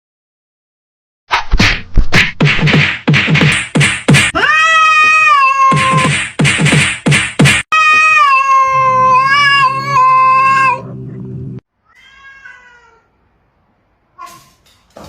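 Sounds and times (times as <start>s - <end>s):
cat yowling: 4.3s - 6.0s, 7.7s - 10.9s, 11.8s - 13.1s
faint cat meow: 11.8s - 13.2s, 14.2s - 14.6s.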